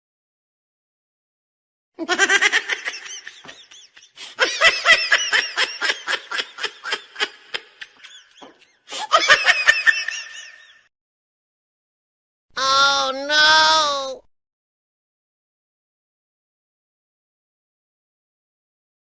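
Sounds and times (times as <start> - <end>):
high-pitched giggling laugh: 2.0 - 10.9.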